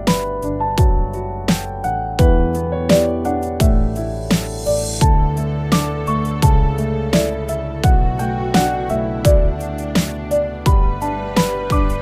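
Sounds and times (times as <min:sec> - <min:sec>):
low drum thump: 0:03.6 - 0:04.0.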